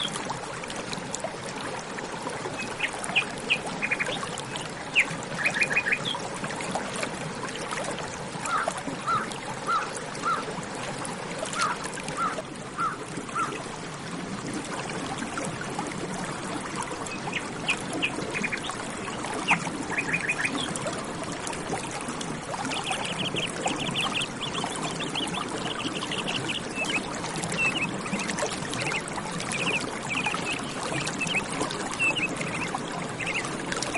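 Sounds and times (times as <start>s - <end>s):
running water: 0.0s - 33.9s
birds calling: 2.6s - 6.2s, 11.6s - 13.6s, 17.1s - 20.7s, 22.7s - 29.0s, 29.6s - 33.5s.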